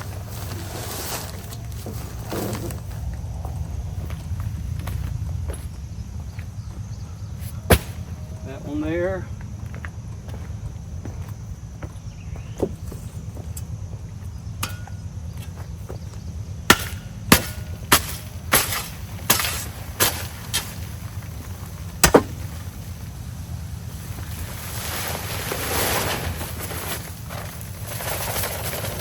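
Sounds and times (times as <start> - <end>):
steady low hum: 0.0 - 29.0
sharp knocks: 7.7 - 8.1, 22.0 - 22.5.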